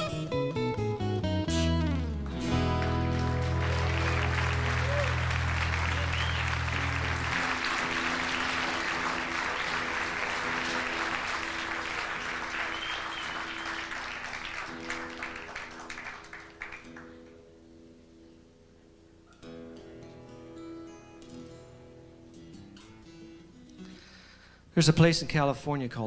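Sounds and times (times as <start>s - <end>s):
soft guitar notes: 0.0s - 11.6s, 16.8s - 24.0s
acoustic guitar strumming: 0.0s - 24.4s
audience applauding: 2.2s - 17.4s
person whistling: 5.9s - 6.8s, 12.6s - 14.0s.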